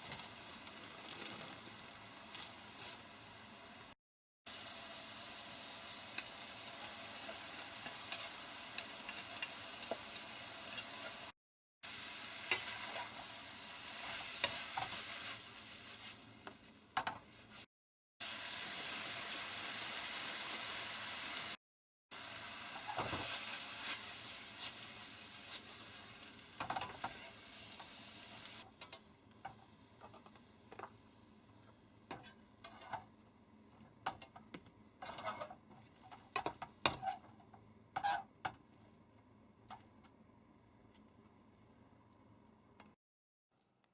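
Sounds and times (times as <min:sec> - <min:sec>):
food sizzling in a frying pan: 0:00.0 - 0:33.1.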